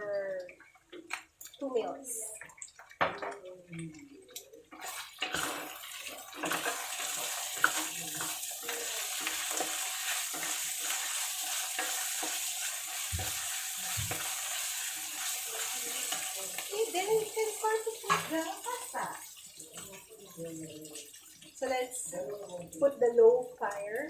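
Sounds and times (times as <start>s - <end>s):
sauce sizzling in a pan: 4.0s - 24.0s
utensil scraping a pan: 4.8s - 17.2s.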